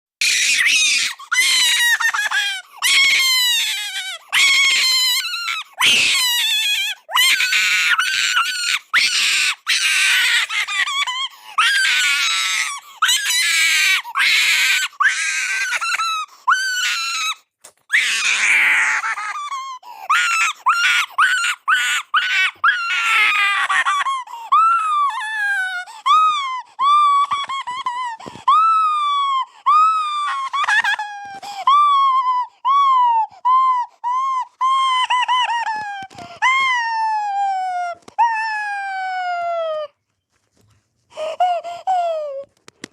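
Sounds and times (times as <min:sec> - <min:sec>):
person crying in wails: 0:23.0 - 0:39.9, 0:41.2 - 0:42.5
person gasping: 0:41.1 - 0:42.0.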